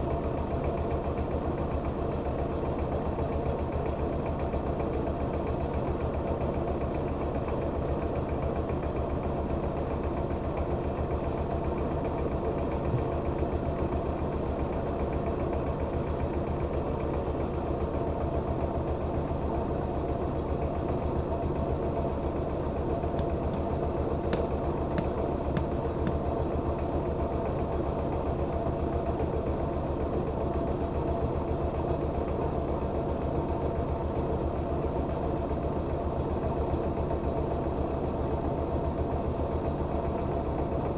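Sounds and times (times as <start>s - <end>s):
milling machine engine running: 22.1s - 26.6s.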